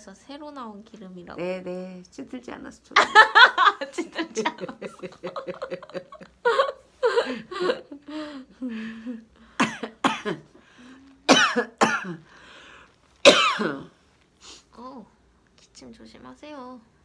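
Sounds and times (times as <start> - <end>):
woman coughing: 9.6 - 10.5, 11.3 - 12.2, 13.2 - 13.9.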